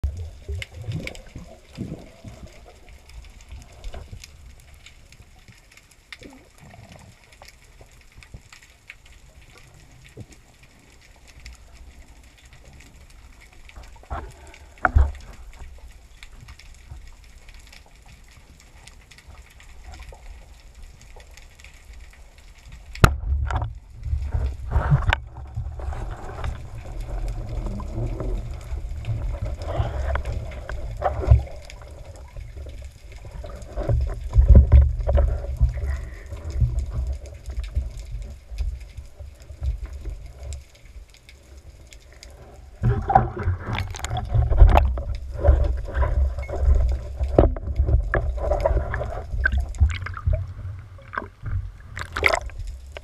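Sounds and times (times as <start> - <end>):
underwater rumble and gurgling: 0.0 - 53.0.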